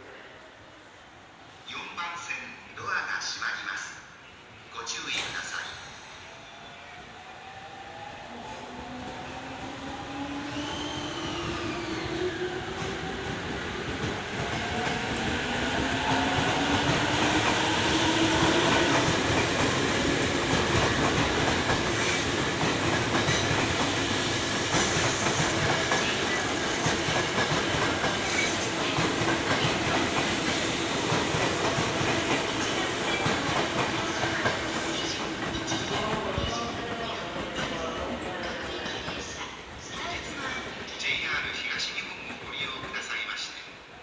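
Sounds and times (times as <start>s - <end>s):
train wheels rumbling on rails: 8.0s - 41.6s.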